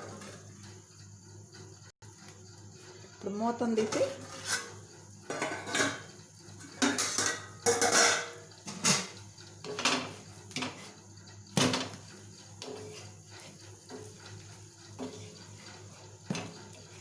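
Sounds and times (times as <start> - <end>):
pan lid and spatula clattering: 3.8 - 10.9.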